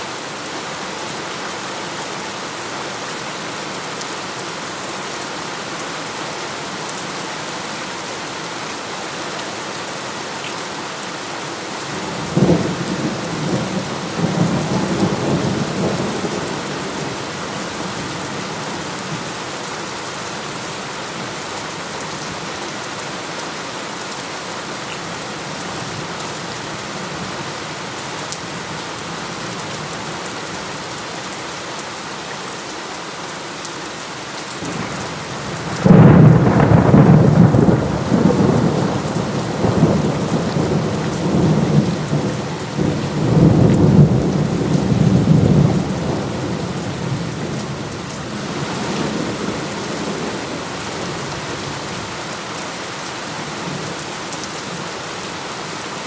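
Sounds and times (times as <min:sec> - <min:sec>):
heavy rain: 0:00.0 - 0:56.0
thunder rumbling: 0:34.7 - 0:51.7.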